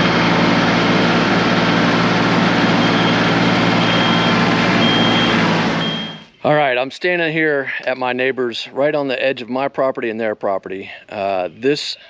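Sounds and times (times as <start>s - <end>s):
small engine running: 0.0s - 6.2s
backup alarm beeping: 2.6s - 6.3s.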